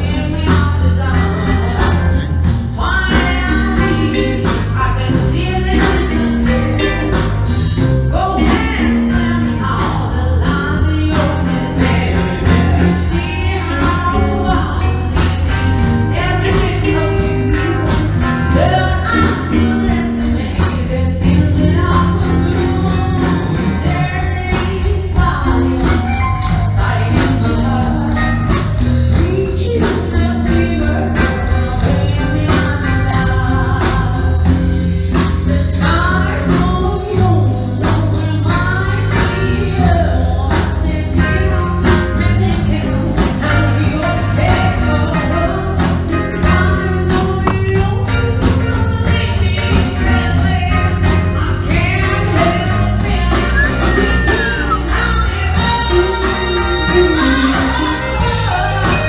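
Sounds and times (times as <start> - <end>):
song with vocals over a beat: 0.0 - 59.0.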